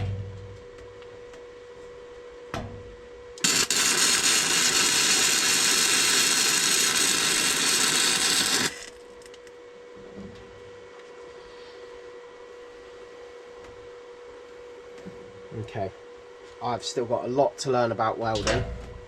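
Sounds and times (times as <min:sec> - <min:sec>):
welding arc crackling hiss: 0:03.4 - 0:09.4
welder low hum: 0:03.4 - 0:09.6.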